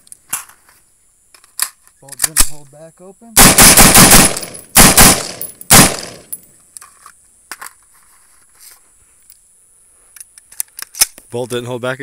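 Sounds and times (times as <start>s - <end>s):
rifle shots: 3.4s - 6.4s.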